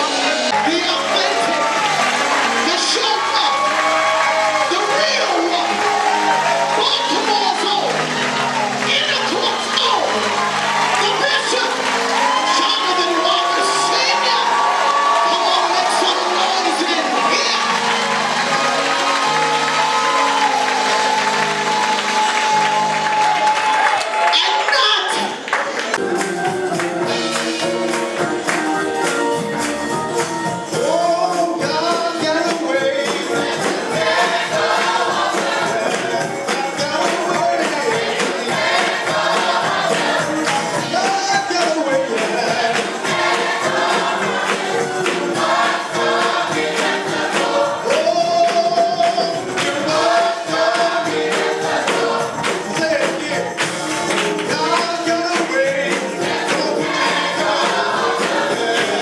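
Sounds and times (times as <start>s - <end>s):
gospel choir singing: 0.0s - 59.0s
tambourine: 26.2s - 59.0s.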